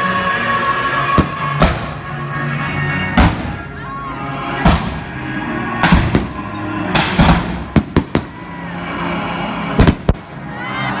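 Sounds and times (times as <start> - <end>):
music playing: 0.0 - 11.0
fireworks banging: 1.1 - 2.3, 3.1 - 3.7, 4.6 - 8.6, 9.8 - 10.4.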